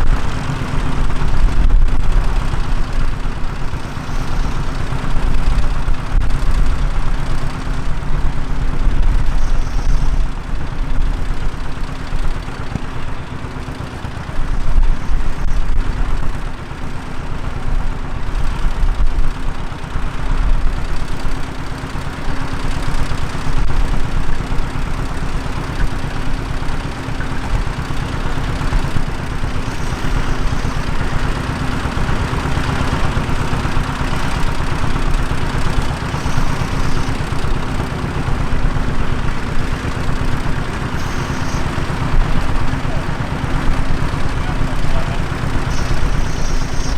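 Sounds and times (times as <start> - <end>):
tractor engine running: 0.0 - 46.9.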